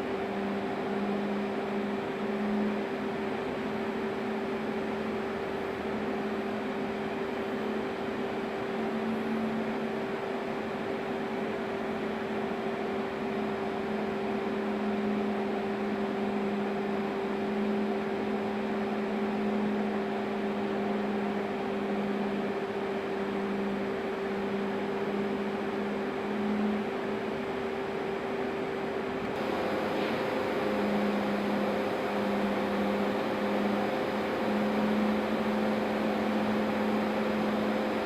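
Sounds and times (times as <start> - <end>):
boiler plant machinery running: 29.2 - 38.0.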